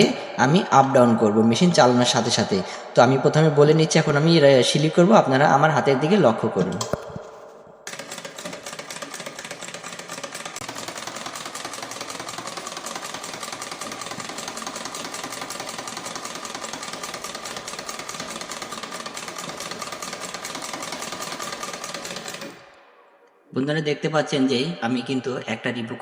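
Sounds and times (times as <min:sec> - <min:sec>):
sewing machine running fast: 0:07.9 - 0:22.7.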